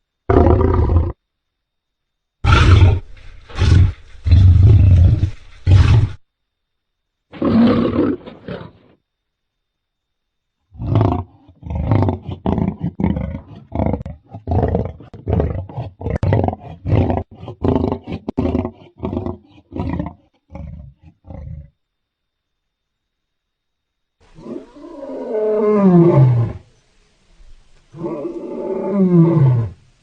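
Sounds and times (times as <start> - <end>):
lion roaring: 0.3 - 1.2, 2.4 - 6.2, 7.3 - 9.0, 10.8 - 21.7, 24.3 - 26.7, 27.9 - 29.8.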